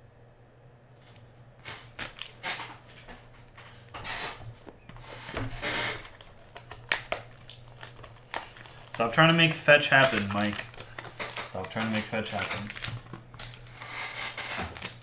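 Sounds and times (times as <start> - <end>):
cards clicking set down: 4.6 - 13.7.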